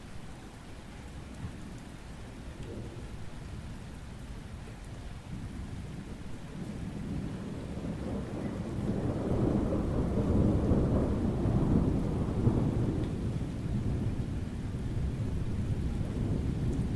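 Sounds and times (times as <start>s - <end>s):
steady rain: 0.0s - 16.9s
thunder rumbling: 6.5s - 16.9s.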